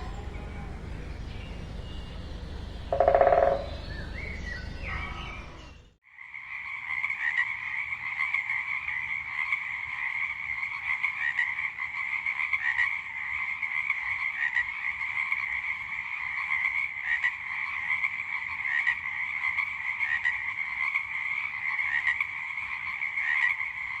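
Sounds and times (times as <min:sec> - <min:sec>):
chorus of calling animals: 0:00.0 - 0:05.9.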